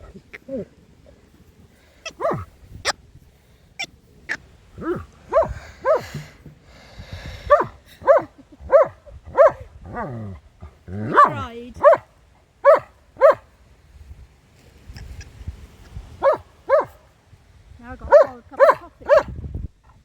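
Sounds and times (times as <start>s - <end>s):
dog barking excitedly: 2.0s - 3.0s, 4.8s - 6.2s, 7.5s - 10.2s, 11.0s - 13.5s, 16.2s - 17.0s, 18.0s - 19.4s.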